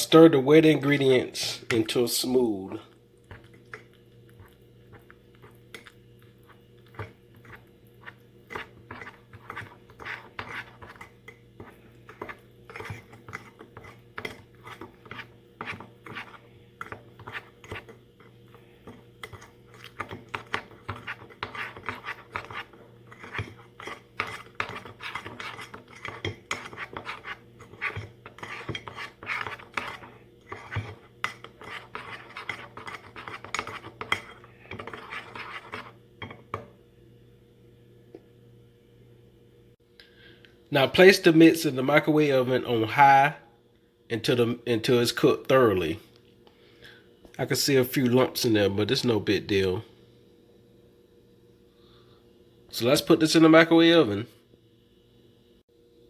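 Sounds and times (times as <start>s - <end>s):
utensil stirring batter in mug: 3.3s - 36.7s.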